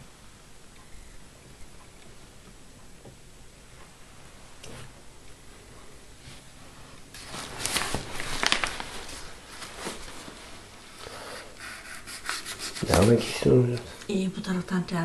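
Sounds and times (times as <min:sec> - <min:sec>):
packaging rustling and crackling: 0:07.1 - 0:10.4.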